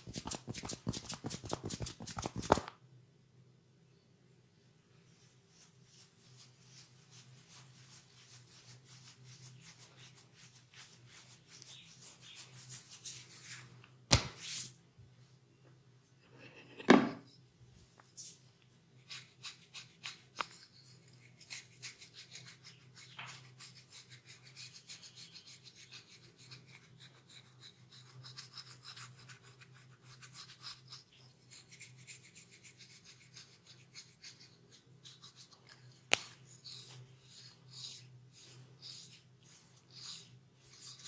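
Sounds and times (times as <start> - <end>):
hands rubbing skin and hair: 0.0 - 2.7, 5.1 - 14.8, 32.5 - 41.0.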